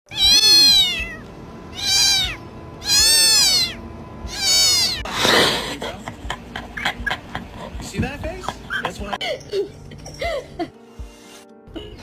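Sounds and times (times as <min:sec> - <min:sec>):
cat meowing: 0:00.1 - 0:05.1.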